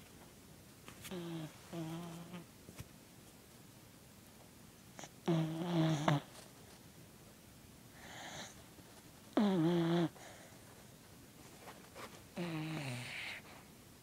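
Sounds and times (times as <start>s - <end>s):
puppy snoring: 1.1s - 2.5s, 5.0s - 6.4s, 9.3s - 10.5s, 12.4s - 13.5s
soft breathing: 7.9s - 9.2s, 10.1s - 13.8s.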